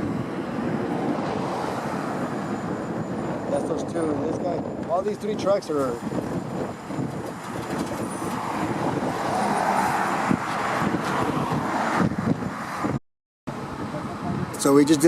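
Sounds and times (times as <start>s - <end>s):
vehicle engine and road noise: 0.0s - 15.0s.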